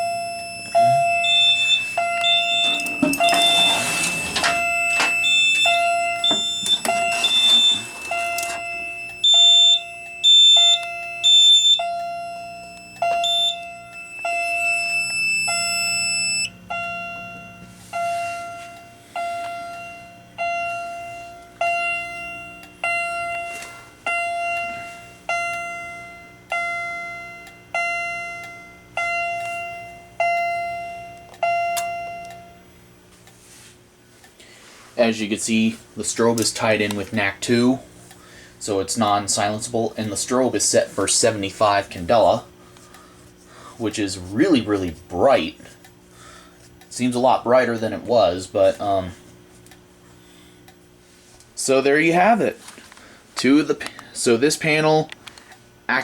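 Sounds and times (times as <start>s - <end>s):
pulsed beep: 0.0s - 16.5s
buzzer steady high tone: 0.0s - 32.8s
fire alarm chime: 0.0s - 32.8s, 35.0s - 42.6s.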